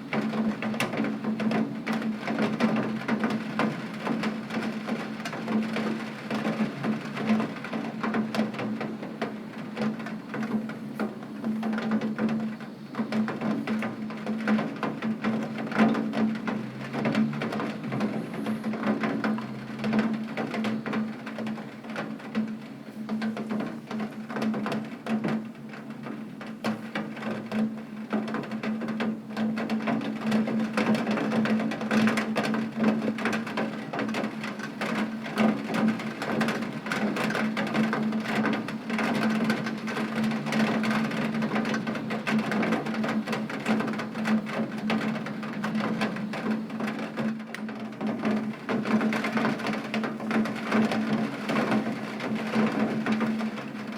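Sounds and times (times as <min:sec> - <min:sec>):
rain on a tin roof: 0:00.0 - 0:53.9.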